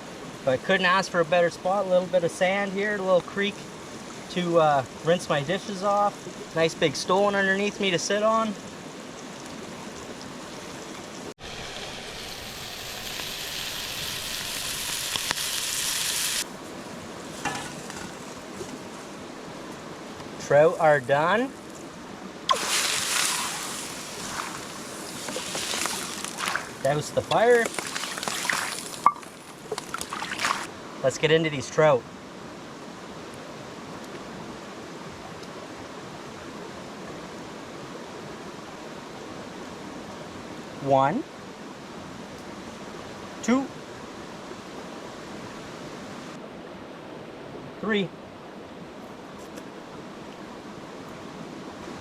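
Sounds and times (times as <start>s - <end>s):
creek water rushing: 0.0s - 52.0s
fish sizzling in a pan: 11.4s - 16.4s, 22.5s - 26.8s, 27.5s - 30.7s.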